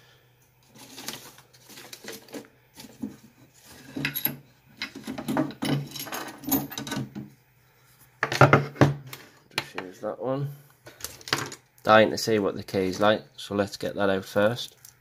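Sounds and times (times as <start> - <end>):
small metal tools clinking: 3.7 - 7.1.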